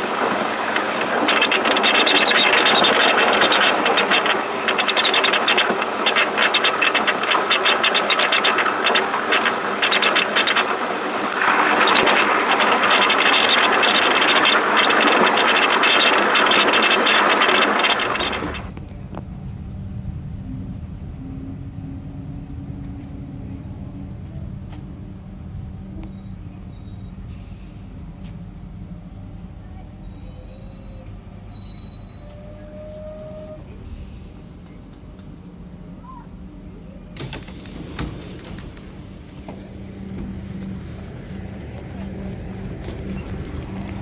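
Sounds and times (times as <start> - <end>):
train rattling in motion: 0.0 - 44.0
steady low rumble: 18.6 - 24.7.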